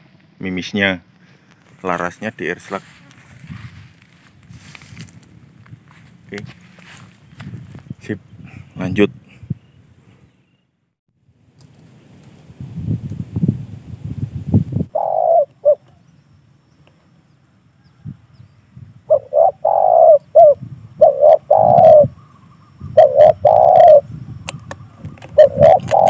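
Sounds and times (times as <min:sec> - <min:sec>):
dove cooing: 0:14.9 - 0:16.0, 0:19.1 - 0:24.1, 0:24.9 - 0:26.0.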